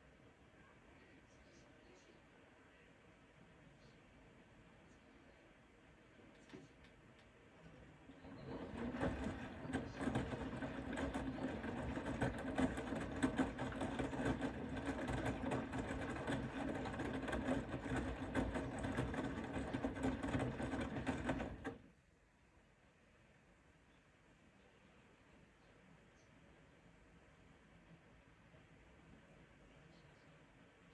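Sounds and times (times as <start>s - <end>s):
washing machine drum humming: 8.0s - 21.9s
laundry tumbling and clattering: 8.1s - 21.8s.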